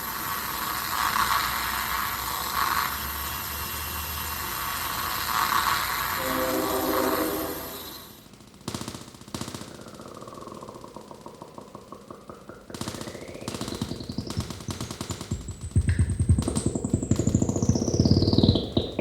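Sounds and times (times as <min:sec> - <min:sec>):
thin gliding tone: 0:06.1 - 0:08.2
stuttering rattle of clicks: 0:08.3 - 0:19.0.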